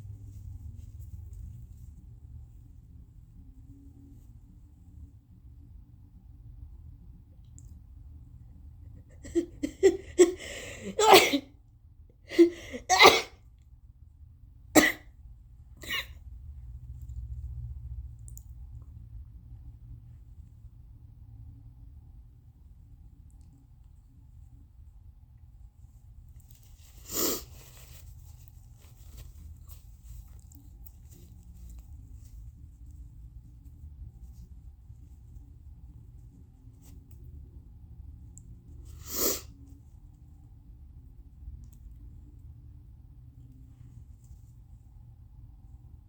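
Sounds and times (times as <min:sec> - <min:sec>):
person gasping: 0:09.2 - 0:11.4, 0:12.3 - 0:12.9
person sneezing: 0:09.2 - 0:11.4, 0:12.3 - 0:13.4, 0:14.8 - 0:15.0, 0:15.8 - 0:16.1
tissue rustling: 0:25.9 - 0:37.2.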